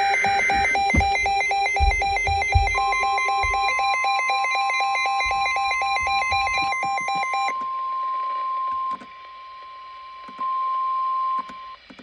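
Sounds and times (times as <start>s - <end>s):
rapid electronic beeping: 0.0s - 7.5s
steady high alarm tone: 0.0s - 7.6s.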